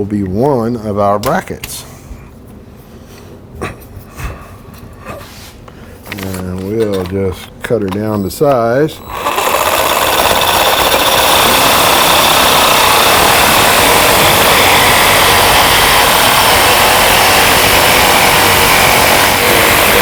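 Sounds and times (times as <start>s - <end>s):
power tool cutting metal: 9.0s - 20.0s.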